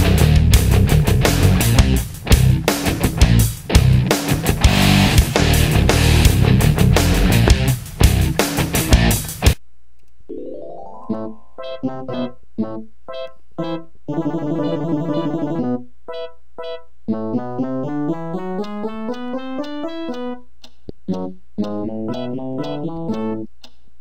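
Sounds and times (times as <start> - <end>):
electronic keyboard music: 10.3 - 23.5.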